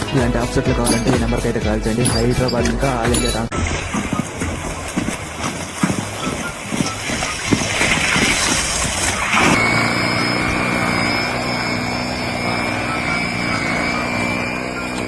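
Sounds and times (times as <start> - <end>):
machine hum: 8.7 - 15.0
high-pitched whine: 9.1 - 15.0.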